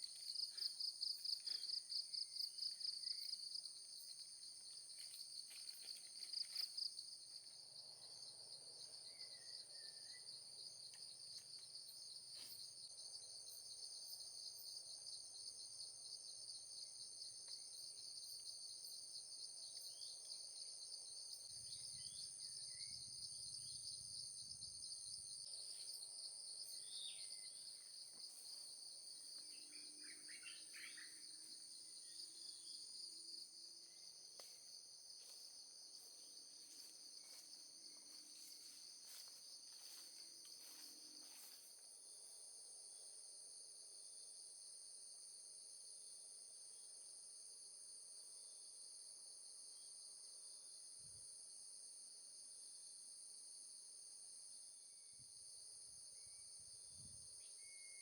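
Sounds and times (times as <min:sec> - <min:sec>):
insects chirring: 0:00.0 - 0:14.7, 0:19.7 - 0:43.1
faint bird chirps: 0:29.4 - 0:32.6, 0:57.4 - 0:58.0.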